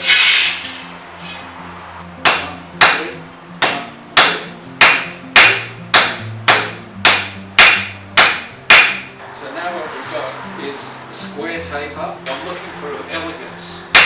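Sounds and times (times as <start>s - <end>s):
hammer striking hot bar on anvil: 2.2s - 9.1s.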